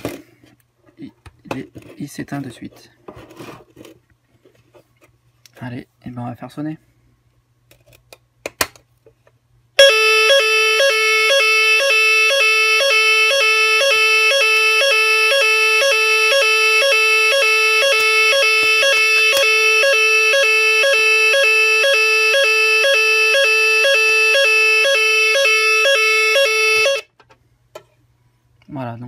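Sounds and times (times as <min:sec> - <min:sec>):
fire alarm sounder two-tone signal: 0:09.8 - 0:27.1.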